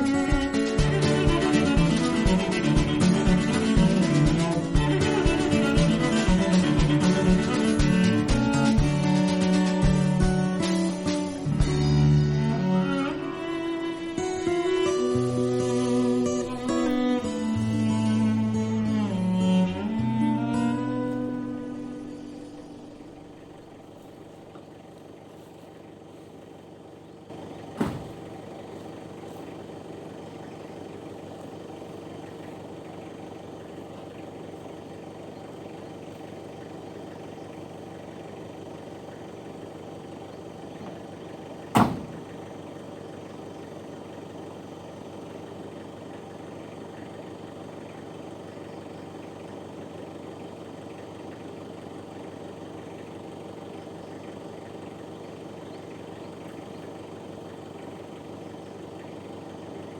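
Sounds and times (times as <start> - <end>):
vehicle engine running: 0.0 - 59.9
sharp knocks: 27.8 - 28.3, 41.7 - 42.4.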